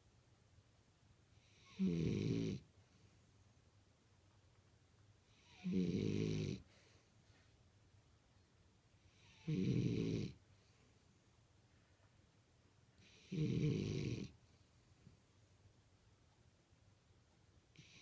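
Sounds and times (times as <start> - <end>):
dog snoring: 1.3 - 2.7, 5.2 - 6.8, 9.0 - 10.4, 13.0 - 14.4, 17.8 - 18.0.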